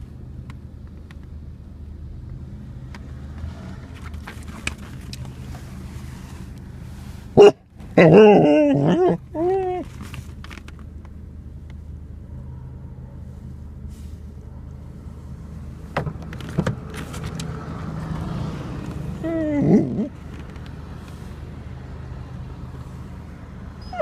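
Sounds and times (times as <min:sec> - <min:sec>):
dog wavering vocal calls: 0:07.4 - 0:09.9, 0:19.2 - 0:20.2, 0:23.8 - 0:24.0.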